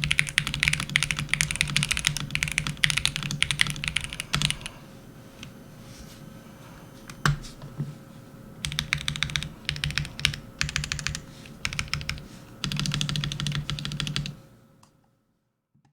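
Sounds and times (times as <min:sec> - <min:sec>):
typing on mechanical keyboard: 0:00.0 - 0:04.7, 0:08.6 - 0:14.4.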